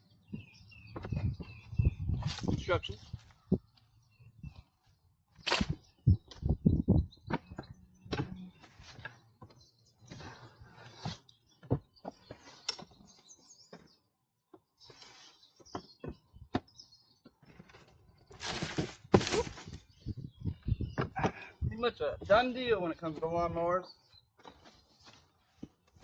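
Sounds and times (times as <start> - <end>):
scraping: 17.5 - 19.8
cardboard rustling: 17.5 - 19.9.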